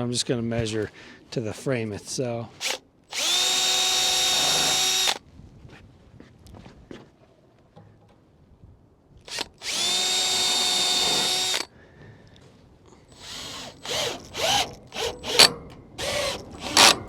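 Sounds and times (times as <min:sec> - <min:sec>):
power drill running: 0:02.6 - 0:05.2, 0:09.3 - 0:11.7, 0:13.1 - 0:17.0.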